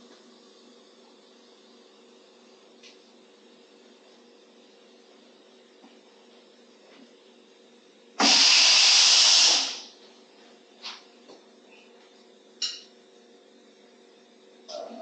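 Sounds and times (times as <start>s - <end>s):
air hose hissing: 8.2s - 9.9s.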